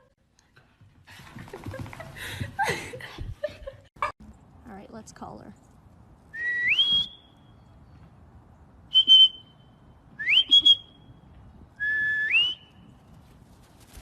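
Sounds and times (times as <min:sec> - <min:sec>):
person whistling rising notes: 0:06.4 - 0:07.4, 0:08.9 - 0:09.6, 0:10.2 - 0:11.1, 0:11.8 - 0:12.8.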